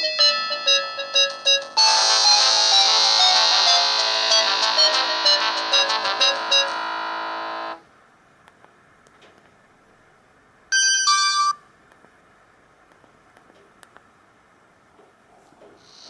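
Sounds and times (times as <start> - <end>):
phone ringtone melody: 0.0 - 7.8
stepped electronic tones: 1.8 - 7.8.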